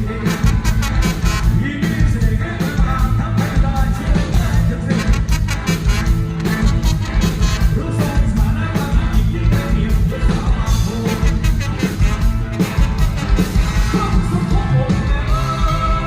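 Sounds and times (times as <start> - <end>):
person singing: 0.0 - 5.6, 7.3 - 12.2, 13.3 - 16.0
live dance band playing: 0.0 - 16.0.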